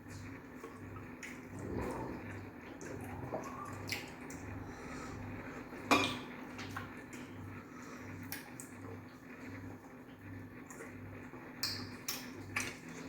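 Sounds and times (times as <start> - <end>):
steady low hum: 0.0 - 13.0
bowls and plates clinking: 5.9 - 6.3.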